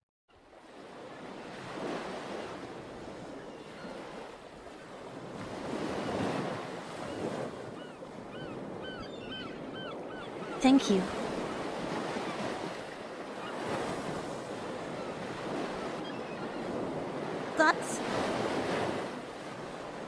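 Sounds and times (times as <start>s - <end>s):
ocean waves washing in: 0.4s - 8.8s, 10.3s - 20.0s
birds chirping: 7.8s - 11.1s.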